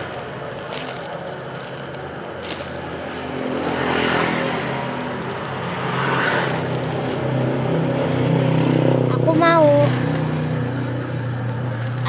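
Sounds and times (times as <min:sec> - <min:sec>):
rustling and handling noises: 0:00.0 - 0:08.8, 0:11.3 - 0:12.0.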